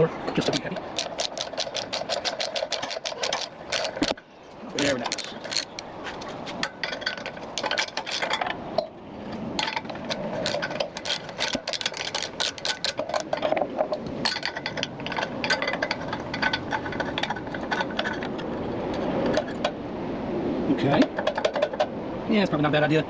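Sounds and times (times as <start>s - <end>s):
metal parts rattling: 0.4s - 5.8s, 6.6s - 8.6s, 9.3s - 19.7s
ratchet wrench clicking: 0.9s - 4.1s, 5.0s - 5.8s.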